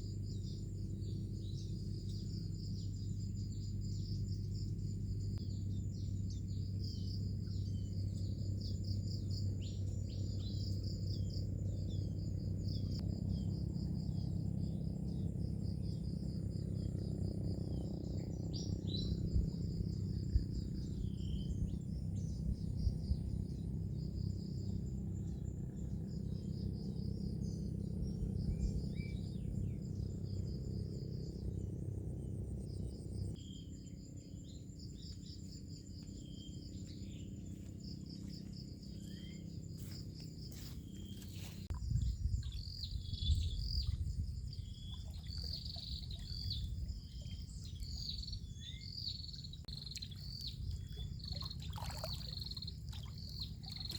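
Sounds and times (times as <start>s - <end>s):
insects trilling: 0.0s - 53.9s
birds chirping: 33.1s - 53.9s.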